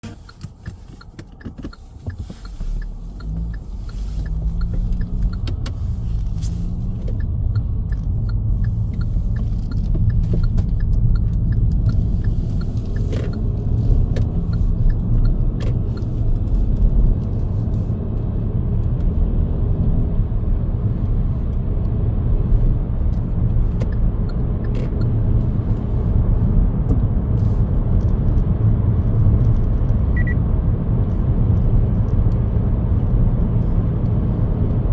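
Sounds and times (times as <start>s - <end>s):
car engine and road rumble: 0.0s - 34.9s
light ticks: 0.1s - 19.2s, 21.0s - 26.1s, 34.0s - 34.7s.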